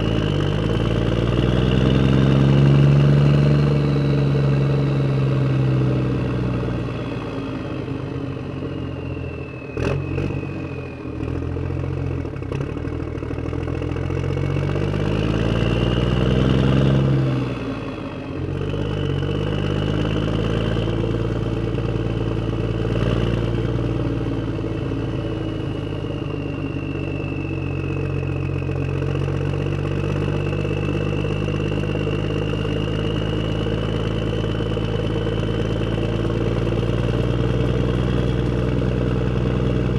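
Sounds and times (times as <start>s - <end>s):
vehicle engine revving: 0.0s - 8.0s, 9.8s - 39.9s.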